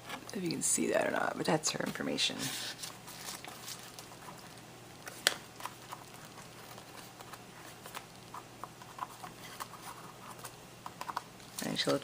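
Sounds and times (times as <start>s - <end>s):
paper pages tapping and rustling: 2.7s - 12.0s.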